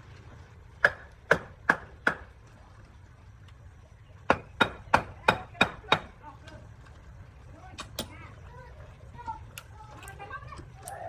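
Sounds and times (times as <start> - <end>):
blows striking wood: 0.8 - 2.3.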